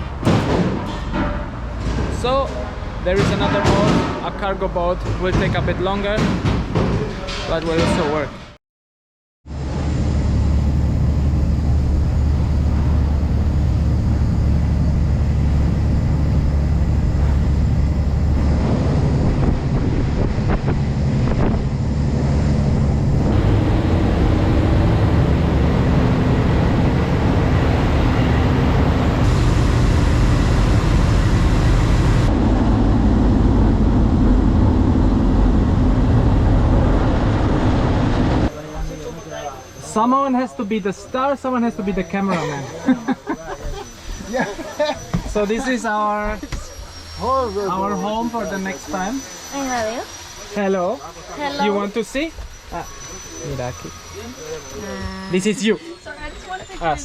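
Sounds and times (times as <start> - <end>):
boat engine droning: 9.5 - 57.0
wind on microphone: 16.5 - 38.5.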